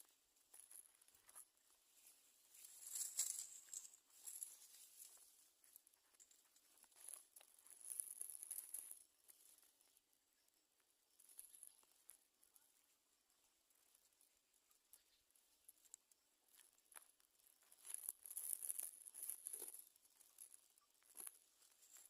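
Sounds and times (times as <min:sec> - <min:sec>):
rustling of nesting material: 0:02.0 - 0:05.3.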